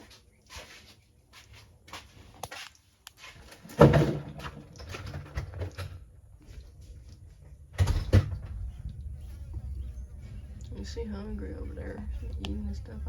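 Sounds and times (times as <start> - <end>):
low rumble: 6.6 - 13.0.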